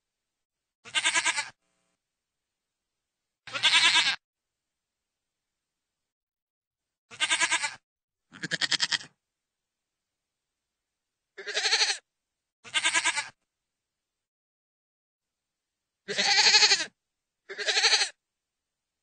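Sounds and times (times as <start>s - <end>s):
goat bleating: 0.8s - 1.6s, 3.5s - 4.2s, 7.1s - 9.1s, 11.4s - 12.0s, 12.6s - 13.4s, 16.1s - 16.9s, 17.5s - 18.2s.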